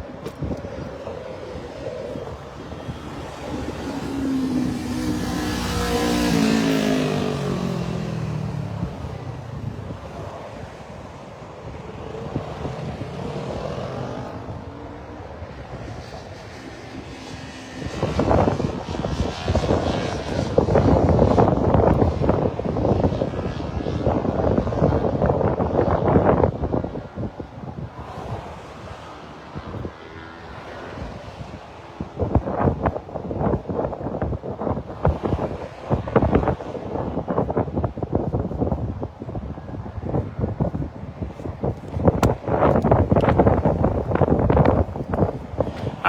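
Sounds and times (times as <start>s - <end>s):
wind buffeting microphone: 0.0s - 46.0s
motorcycle passing by: 0.1s - 32.9s.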